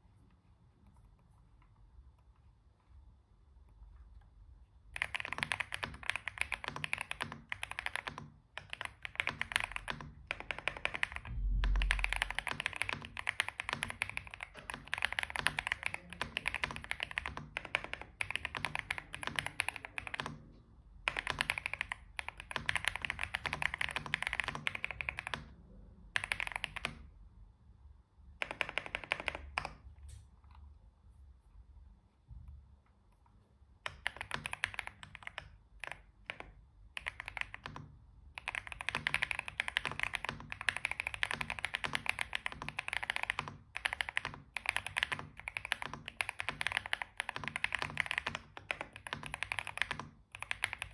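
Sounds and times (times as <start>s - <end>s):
mechanical keyboard typing: 4.9s - 27.1s, 28.3s - 30.0s, 33.8s - 50.9s.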